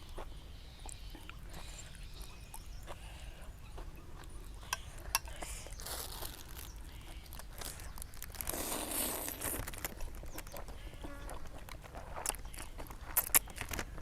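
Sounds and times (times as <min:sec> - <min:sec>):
person chewing: 0:00.0 - 0:14.0
small mouth clicks: 0:12.2 - 0:13.8.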